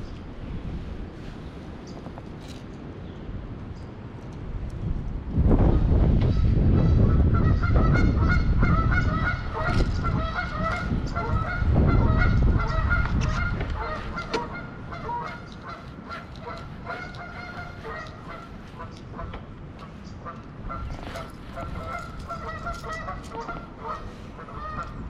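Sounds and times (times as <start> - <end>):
wind buffeting microphone: 0.0 - 25.0
geese honking: 6.4 - 25.0.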